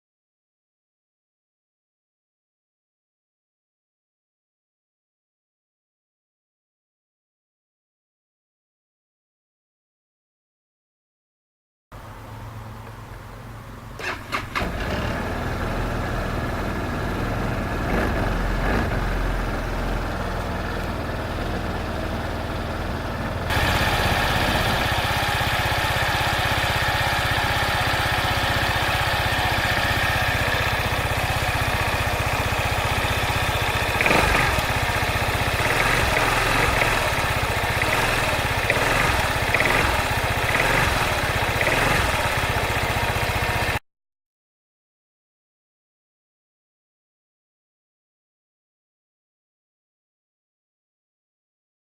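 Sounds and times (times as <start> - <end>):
scooter engine idling: 12.0 - 43.8.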